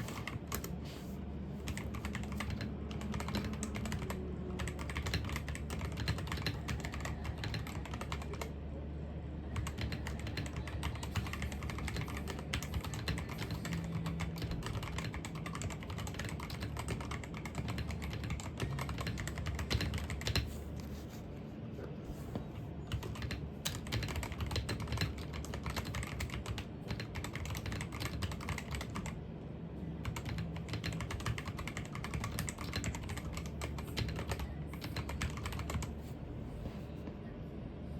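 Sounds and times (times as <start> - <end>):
typing on computer keyboard: 0.0 - 0.8, 1.6 - 8.5, 9.6 - 20.7, 22.9 - 29.2, 30.0 - 36.0
steady low hum: 0.0 - 37.9.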